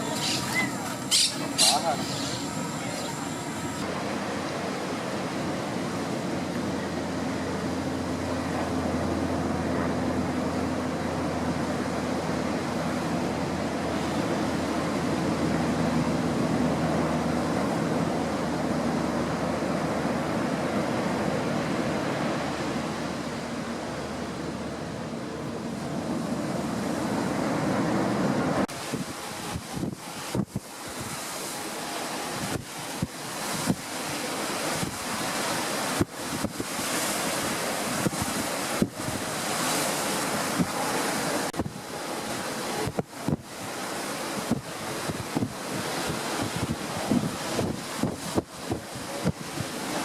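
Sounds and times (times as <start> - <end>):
waves: 0.0 - 50.0
wind buffeting microphone: 12.9 - 50.0.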